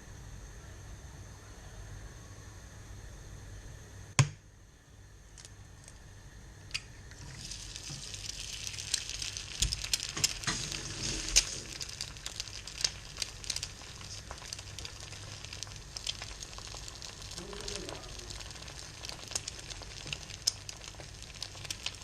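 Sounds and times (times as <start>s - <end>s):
egg sizzling in oil: 6.7s - 22.0s.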